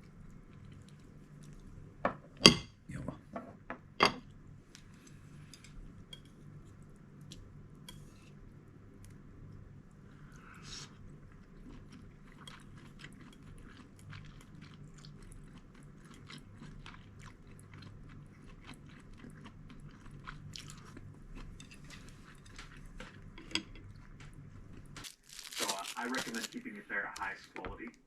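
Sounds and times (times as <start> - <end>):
person chewing crunchy food: 10.8 - 27.3.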